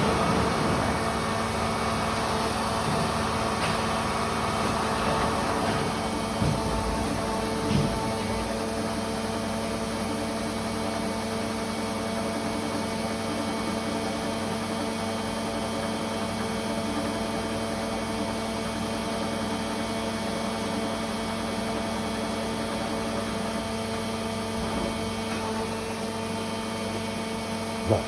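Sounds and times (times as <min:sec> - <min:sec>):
industrial machinery humming: 0:00.0 - 0:28.0.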